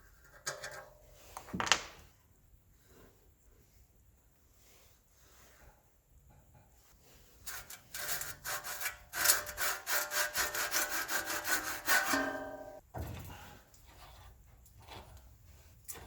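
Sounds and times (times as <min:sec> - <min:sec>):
hand saw cutting wood: 0:07.5 - 0:12.6.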